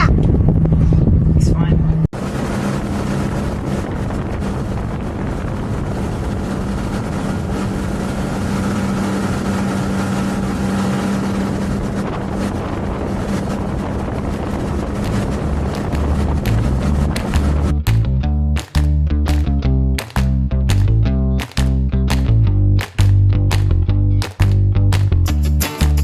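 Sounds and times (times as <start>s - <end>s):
wind on microphone: 0.0s - 18.1s
motorboat engine humming: 0.0s - 25.4s.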